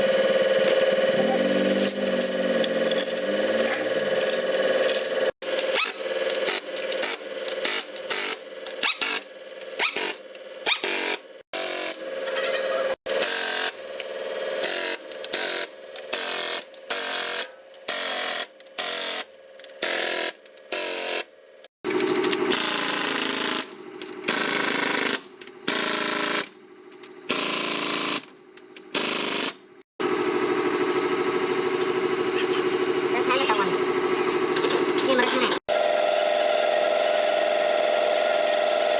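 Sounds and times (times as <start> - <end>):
power tool motor whine: 0.0 - 8.4, 35.7 - 38.9.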